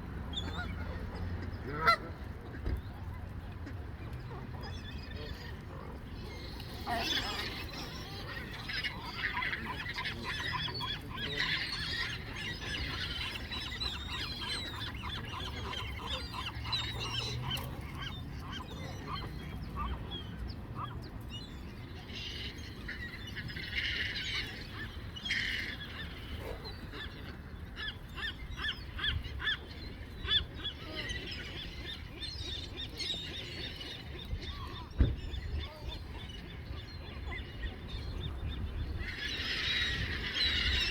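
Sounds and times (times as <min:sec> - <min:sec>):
geese honking: 0:01.4 - 0:02.0.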